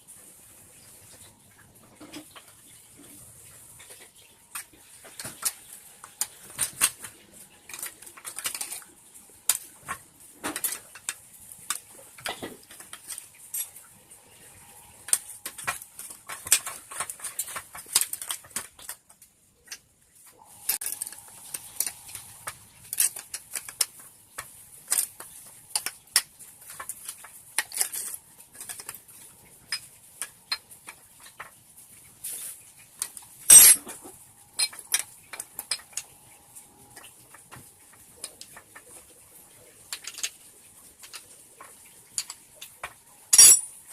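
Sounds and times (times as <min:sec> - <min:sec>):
metal hand tools clinking: 0:33.5 - 0:34.0, 0:43.3 - 0:43.9.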